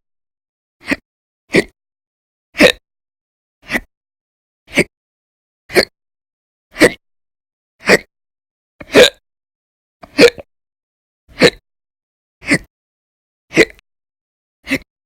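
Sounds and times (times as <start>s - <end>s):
woman hiccuping: 8.9s - 9.2s, 10.1s - 10.5s.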